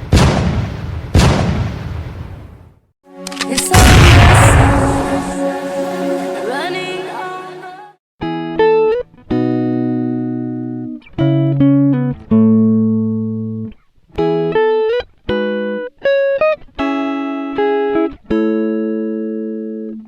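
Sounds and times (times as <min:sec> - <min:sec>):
plucked string melody: 0:03.1 - 0:07.9.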